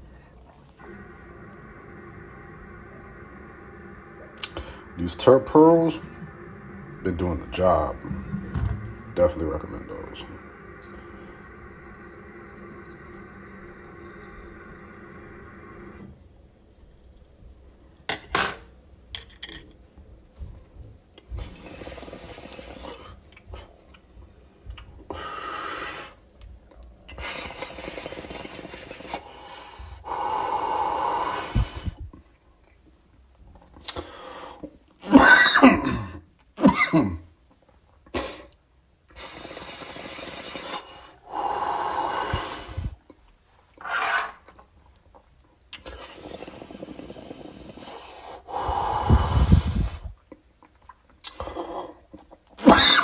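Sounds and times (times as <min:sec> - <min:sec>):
person inhaling through a dab rig: 0:00.0 - 0:16.3, 0:21.4 - 0:23.8, 0:25.0 - 0:26.3, 0:27.1 - 0:32.2, 0:38.1 - 0:43.1, 0:45.8 - 0:50.2
person coughing: 0:35.1 - 0:37.2
heavy exhales: 0:45.9 - 0:50.2.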